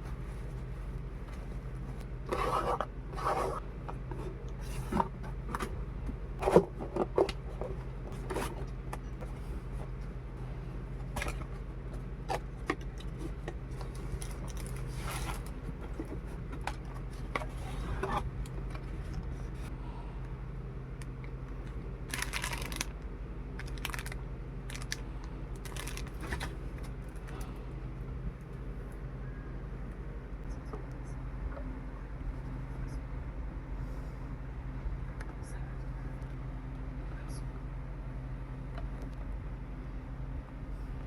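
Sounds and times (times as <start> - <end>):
steady low hum: 0.0 - 41.0
rubbing and scraping packaging: 1.3 - 5.7, 6.4 - 9.9, 12.3 - 19.7, 22.1 - 22.9, 23.6 - 25.0, 25.6 - 27.4.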